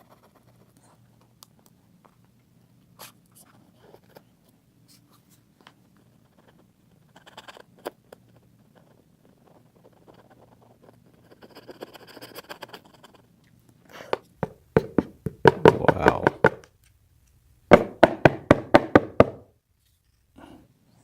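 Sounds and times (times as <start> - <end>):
sharp knocks on hard surface: 14.4 - 16.6, 17.7 - 19.5.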